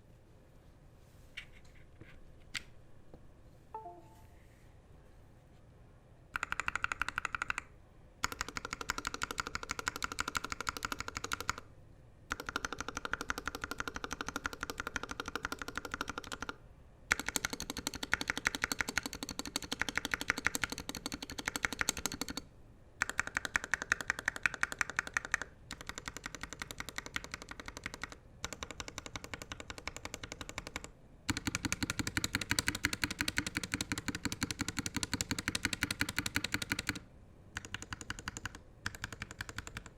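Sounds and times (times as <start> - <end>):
mechanical keyboard typing: 6.4 - 11.6, 12.3 - 39.9.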